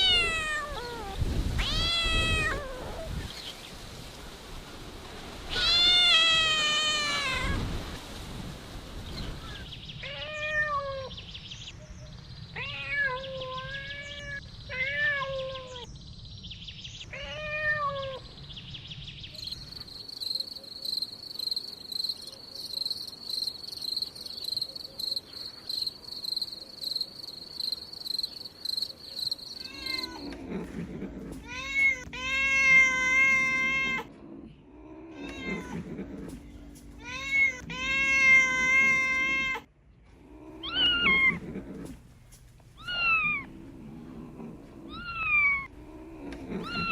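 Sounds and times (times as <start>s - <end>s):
kitten meowing: 0.0s - 3.0s.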